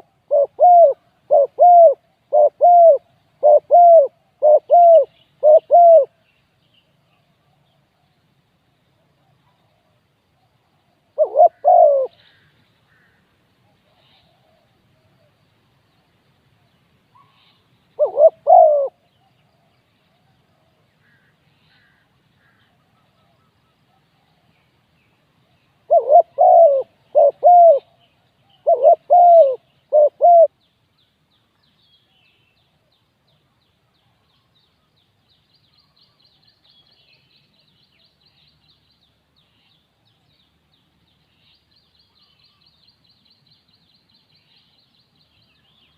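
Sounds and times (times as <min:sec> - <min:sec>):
dove cooing: 0:00.0 - 0:06.2, 0:11.1 - 0:12.4, 0:18.0 - 0:19.1, 0:25.8 - 0:30.5
small birds chirping: 0:09.0 - 0:45.9.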